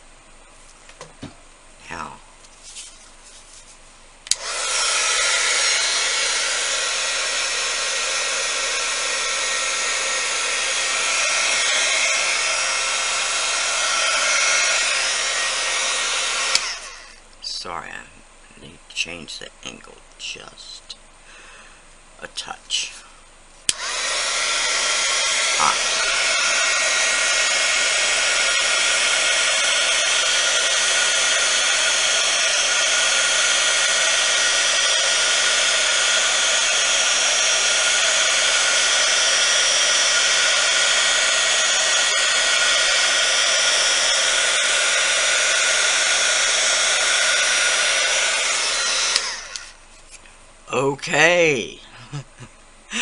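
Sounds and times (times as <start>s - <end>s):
hot-air blower running: 4.3s - 17.2s, 23.7s - 49.8s.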